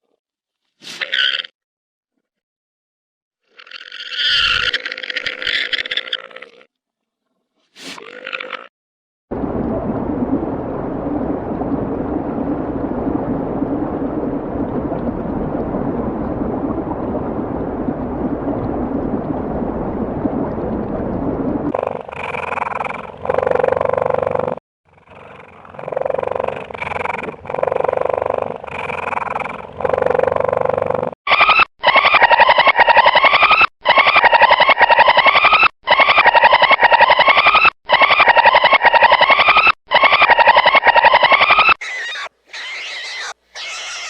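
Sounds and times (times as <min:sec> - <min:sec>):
rough animal call: 0:00.8 - 0:01.5, 0:03.5 - 0:06.7, 0:21.7 - 0:44.0
short animal calls: 0:03.7 - 0:06.5, 0:39.3 - 0:44.0.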